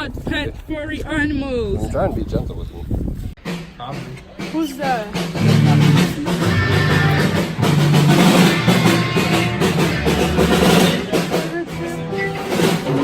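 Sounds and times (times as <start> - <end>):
music with drums and heavy bass: 3.4 - 13.0.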